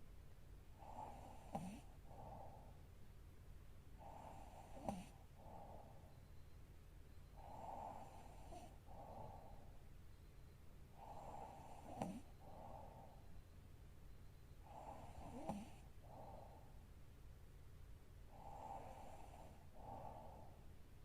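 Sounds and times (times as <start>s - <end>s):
short snort and click: 1.5s - 1.8s, 4.8s - 5.1s, 11.9s - 12.3s
woman breathing heavily: 8.7s - 9.8s, 16.0s - 16.8s, 19.6s - 20.7s.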